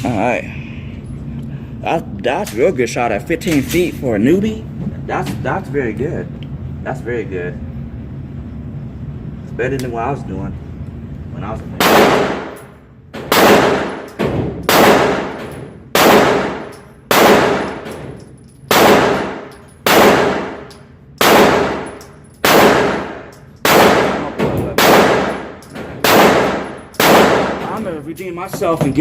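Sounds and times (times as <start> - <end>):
gunshots with echo: 11.8 - 12.6, 13.2 - 17.9, 18.7 - 27.7.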